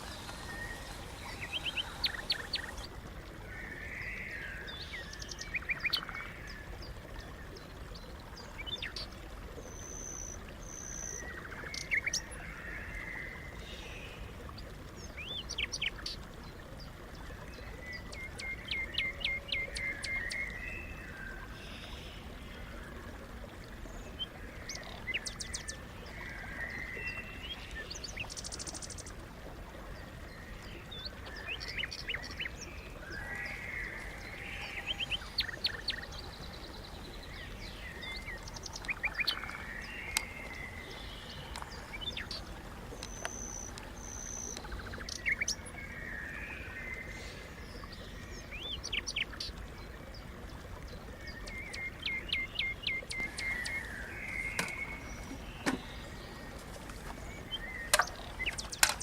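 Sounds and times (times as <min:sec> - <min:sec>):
songbirds singing and calling: 0:00.0 - 0:59.0.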